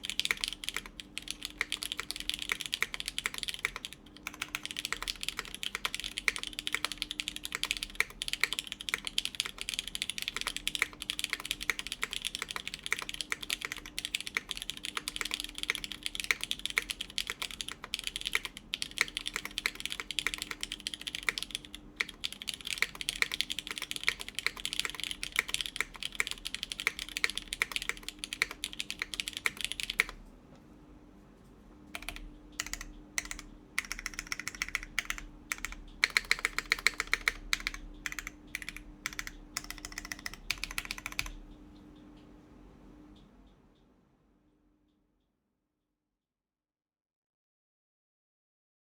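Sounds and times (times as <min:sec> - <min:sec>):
fast typing on mechanical keyboard: 0:00.0 - 0:30.2, 0:32.0 - 0:41.5.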